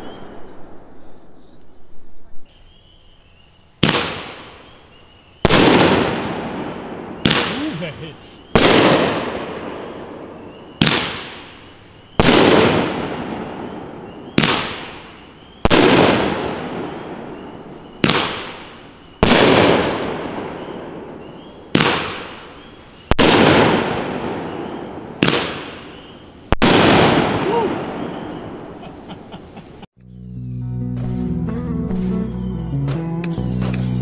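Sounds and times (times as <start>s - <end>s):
firework cake bangs: 3.8s - 4.8s, 5.4s - 22.5s, 23.1s - 28.6s.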